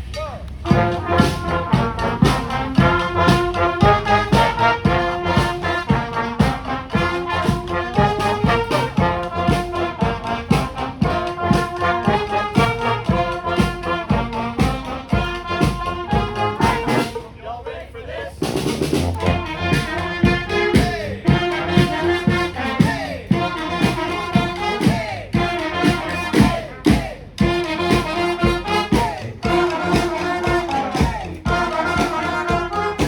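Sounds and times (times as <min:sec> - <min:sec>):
steady drum beat: 0:00.0 - 0:17.3, 0:18.4 - 0:33.0
brass band horns playing chords: 0:00.6 - 0:17.5, 0:18.5 - 0:33.0.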